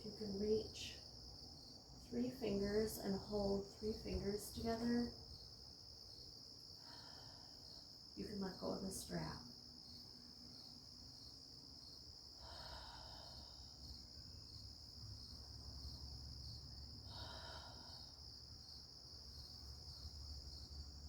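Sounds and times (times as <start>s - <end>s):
crickets chirping: 0.0s - 21.0s.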